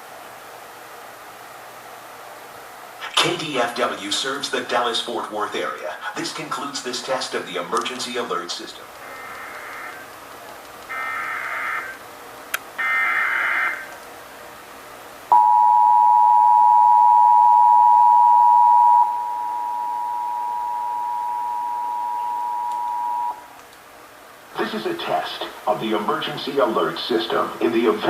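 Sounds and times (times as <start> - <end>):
two-tone attention signal: 15.3 - 23.4.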